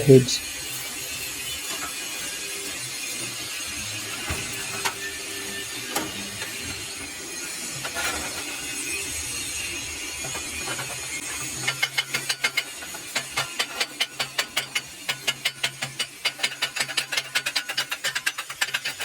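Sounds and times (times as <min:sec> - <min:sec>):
steady workshop hiss: 0:00.0 - 0:15.3
chipping hammer tapping metal: 0:10.2 - 0:19.0.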